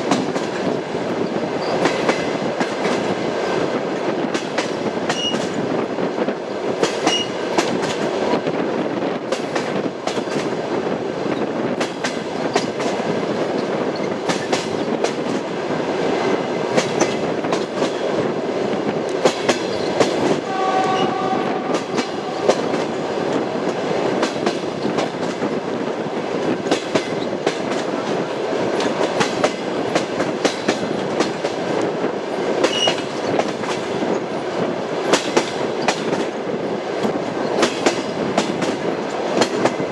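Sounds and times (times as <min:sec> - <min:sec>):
train wheels clattering over rail joints: 0:00.0 - 0:20.4, 0:21.7 - 0:39.9
brief tone: 0:20.5 - 0:22.0.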